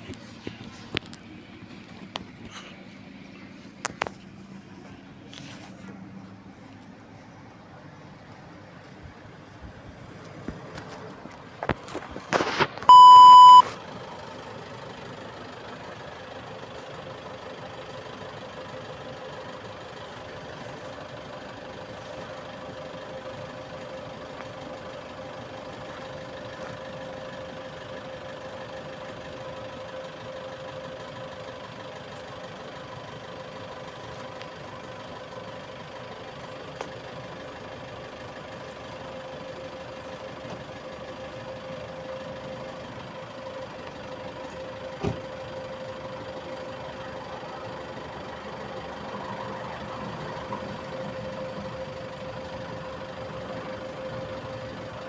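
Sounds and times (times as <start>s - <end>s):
loud short beep: 12.9s - 13.7s.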